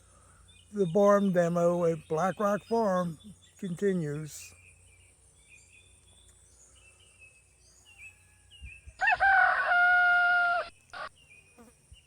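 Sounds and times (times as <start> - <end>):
rooster crowing: 8.0 - 11.1.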